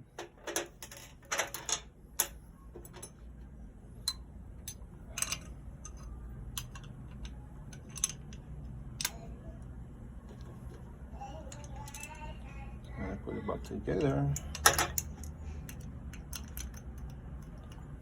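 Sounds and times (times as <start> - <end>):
metal balls clicking: 4.0 - 9.3, 13.9 - 18.0.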